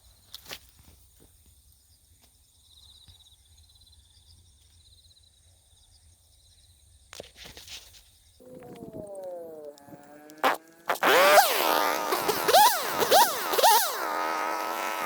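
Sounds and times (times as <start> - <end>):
high-pitched drone: 8.4 - 14.8.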